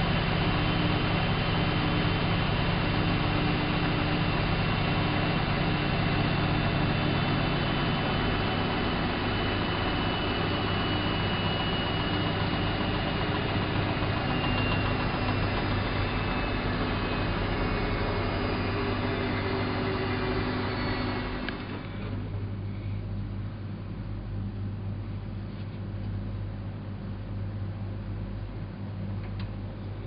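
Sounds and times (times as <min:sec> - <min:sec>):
washing machine motor humming: 0:00.0 - 0:22.6.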